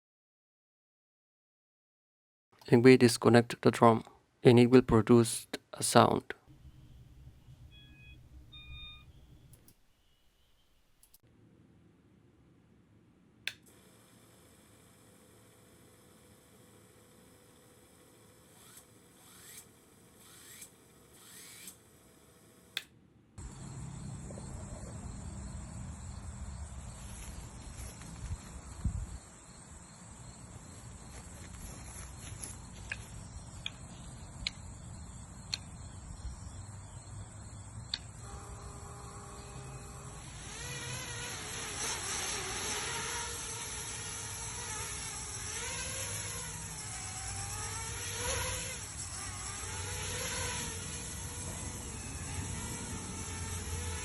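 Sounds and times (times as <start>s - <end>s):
drone motors whining: 15.4s - 21.8s, 23.4s - 54.0s
low rumble with high buzz: 23.4s - 40.8s
sharp click: 34.4s - 34.6s.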